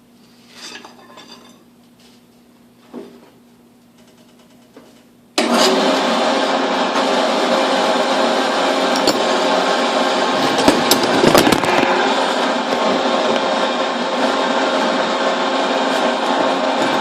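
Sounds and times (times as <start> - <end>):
electric power tool running: 5.4 - 17.0.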